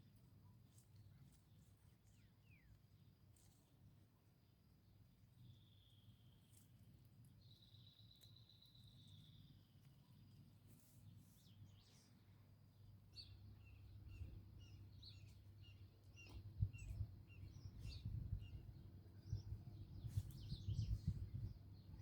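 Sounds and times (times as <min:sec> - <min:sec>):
faint bird chirping: 0:00.4 - 0:22.0
wind on microphone rumble: 0:16.6 - 0:22.0.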